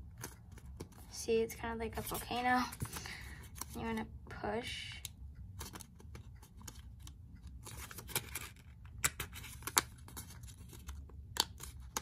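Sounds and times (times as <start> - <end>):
paper crinkling and crackling: 7.6 - 12.0.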